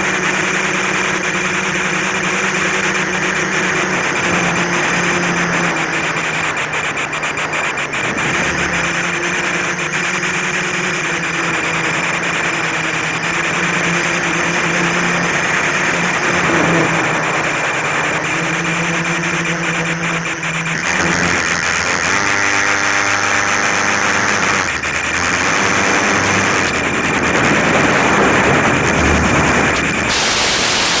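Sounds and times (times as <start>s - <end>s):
quadcopter propellers whirring: 0.0s - 31.0s
sudden hiss: 30.0s - 31.0s.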